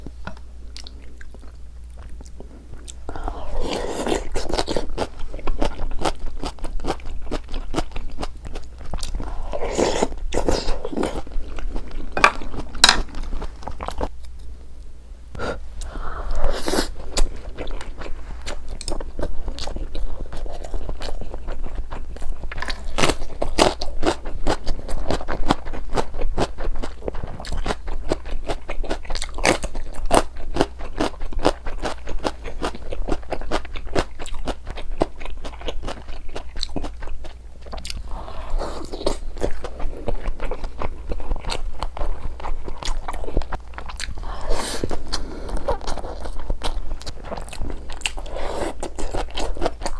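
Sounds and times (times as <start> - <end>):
steady low hum: 0.0 - 25.3
chewing and biting food: 0.3 - 14.5, 17.0 - 49.9.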